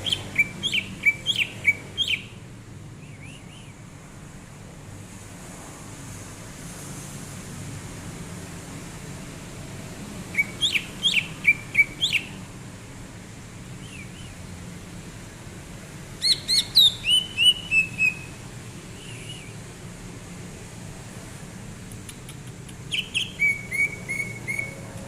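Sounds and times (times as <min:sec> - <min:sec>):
bird whistling chirps: 0:00.0 - 0:02.4, 0:03.0 - 0:03.7, 0:10.3 - 0:12.4, 0:13.8 - 0:14.4, 0:16.2 - 0:18.4, 0:19.0 - 0:19.6, 0:22.9 - 0:24.8.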